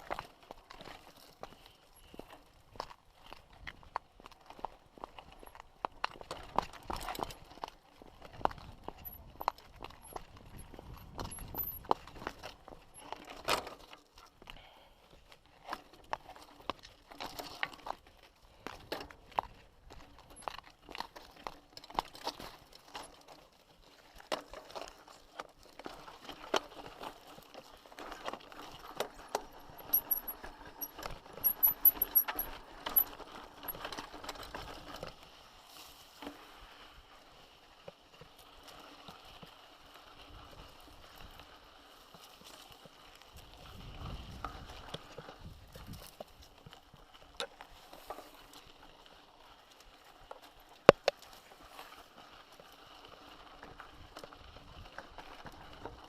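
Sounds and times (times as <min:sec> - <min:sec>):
footsteps on rocky ground: 0:00.0 - 0:13.4.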